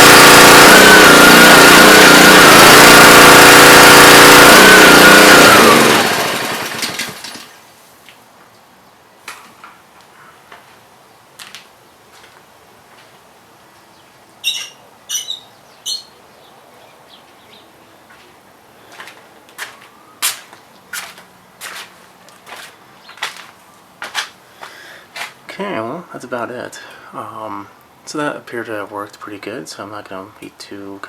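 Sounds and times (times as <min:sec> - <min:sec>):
pressure washer engine running: 0:00.0 - 0:07.6.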